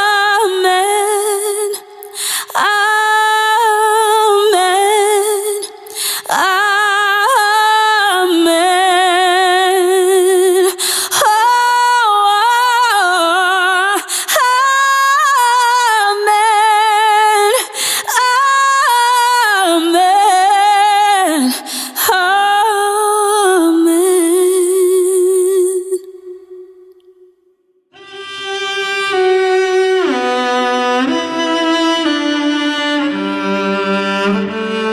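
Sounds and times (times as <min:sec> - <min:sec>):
person breathing: 0:02.0 - 0:02.6, 0:05.8 - 0:06.3, 0:10.7 - 0:11.2, 0:14.0 - 0:14.3, 0:17.6 - 0:18.1, 0:21.5 - 0:22.0.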